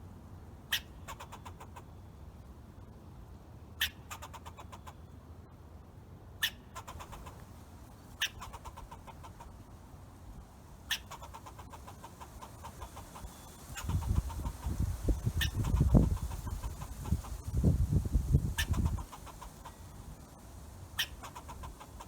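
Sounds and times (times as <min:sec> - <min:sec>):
squirrel chirping and chattering: 0:06.4 - 0:07.4, 0:08.1 - 0:09.6, 0:10.9 - 0:22.0.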